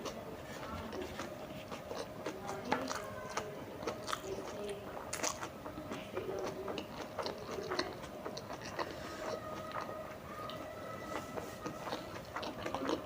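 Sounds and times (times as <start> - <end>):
person chewing food: 0.0 - 13.0.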